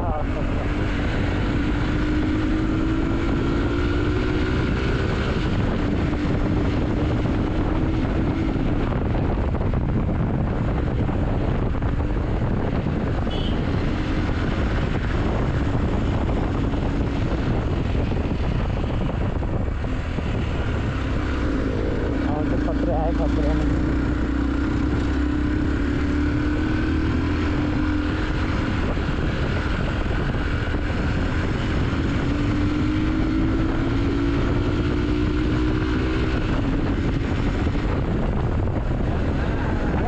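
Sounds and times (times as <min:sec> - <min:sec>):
motorcycle engine: 0:00.0 - 0:40.0
wind noise on microphone: 0:00.0 - 0:40.0.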